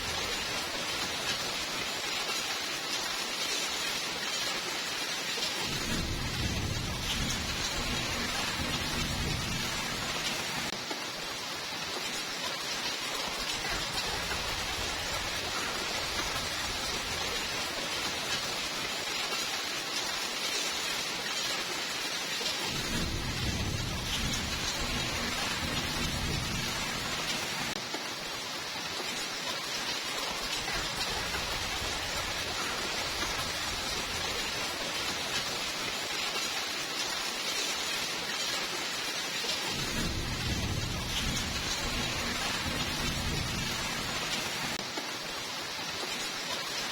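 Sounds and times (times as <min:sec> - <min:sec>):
steady rain falling: 0:00.0 - 0:46.9
low thunder rumbling: 0:05.6 - 0:10.7, 0:22.7 - 0:27.8, 0:39.7 - 0:44.8.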